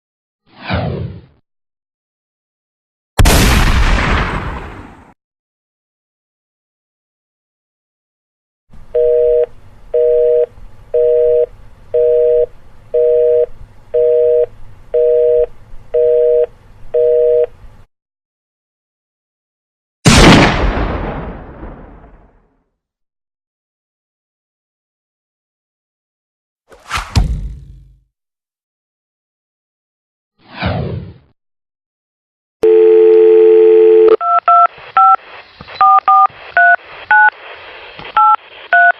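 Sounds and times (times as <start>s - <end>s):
dial tone: 9.0s - 17.5s, 32.6s - 35.2s
telephone busy signal beeps: 9.0s - 17.5s, 32.6s - 35.2s, 35.8s - 37.3s, 38.2s - 38.9s
telephone line click: 32.6s - 33.4s.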